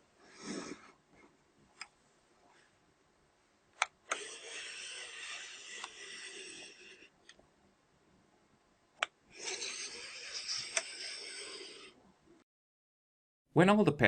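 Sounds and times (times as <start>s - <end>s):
scanner sliding across paper: 4.1s - 7.2s, 9.4s - 12.0s.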